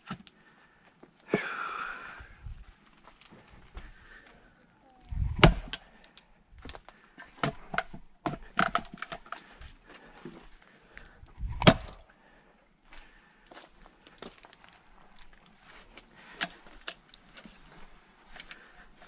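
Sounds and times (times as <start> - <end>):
axe splitting firewood: 5.2 - 5.9, 6.6 - 9.5, 11.4 - 12.0.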